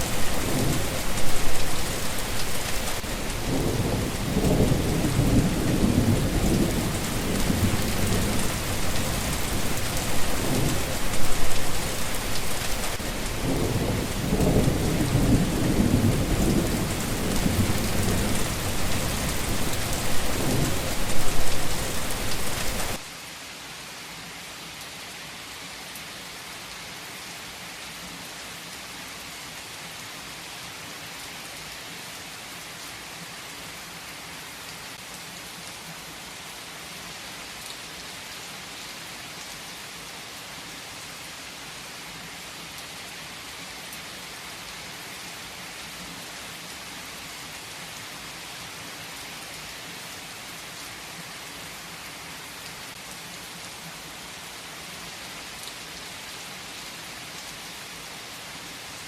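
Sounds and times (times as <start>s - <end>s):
low rolling thunder: 0.0s - 23.0s
heavy rain: 0.0s - 59.0s.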